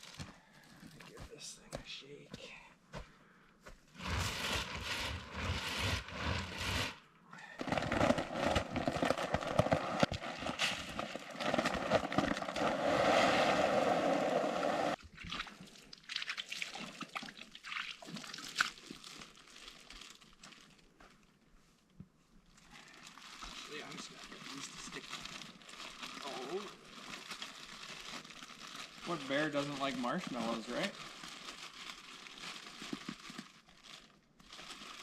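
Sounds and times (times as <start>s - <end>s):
rustling and handling: 3.7s - 7.0s, 7.6s - 13.4s, 18.8s - 35.0s
container being shaken: 4.0s - 7.0s, 7.6s - 15.0s, 22.7s - 35.0s
contents pouring out: 7.6s - 15.0s.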